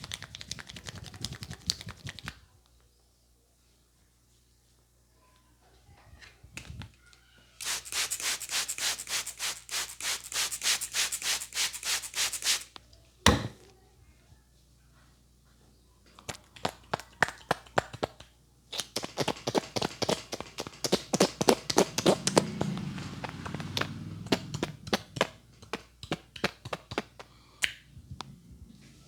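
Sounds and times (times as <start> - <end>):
hands rubbing fast over hair: 0.0 - 2.4, 7.6 - 12.7, 18.8 - 25.9.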